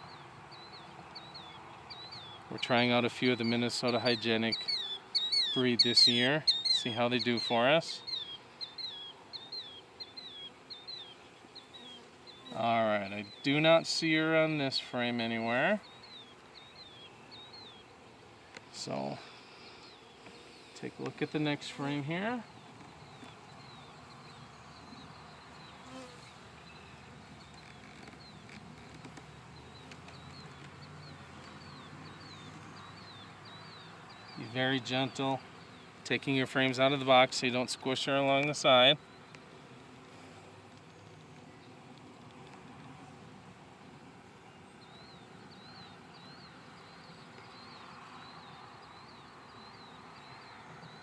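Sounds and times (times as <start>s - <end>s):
honey bees buzzing: 0.0s - 51.0s
steady background hiss: 0.0s - 51.0s
small bird chirping: 3.4s - 12.6s, 15.8s - 17.9s, 22.4s - 36.0s.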